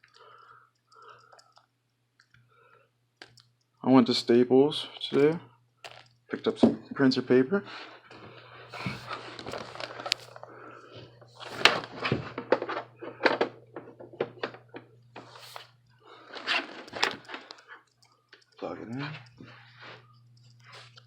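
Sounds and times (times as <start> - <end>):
steady low hum: 2.2 - 21.0
objects knocking and clicking: 5.0 - 6.9.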